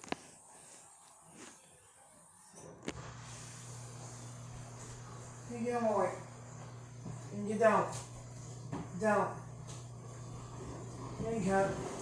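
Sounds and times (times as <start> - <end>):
low electric hum: 2.9 - 12.0.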